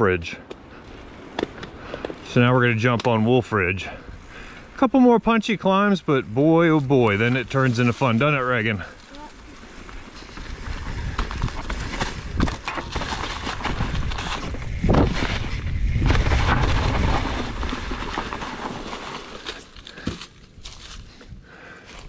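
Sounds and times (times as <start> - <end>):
tyres crunching on dirt: 0.1 - 22.0
bike rattling: 5.9 - 22.0.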